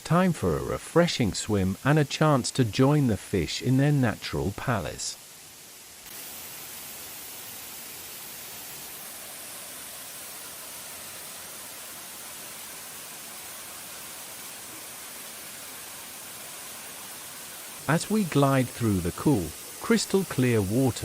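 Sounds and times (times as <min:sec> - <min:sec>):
waterfall rushing: 0:06.2 - 0:21.0.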